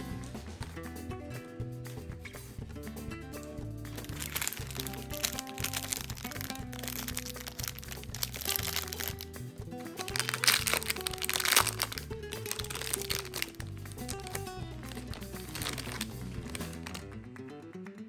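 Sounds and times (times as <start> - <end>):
background music with bass line: 0.0 - 17.7
packaging crinkling: 4.1 - 9.3, 10.0 - 17.1.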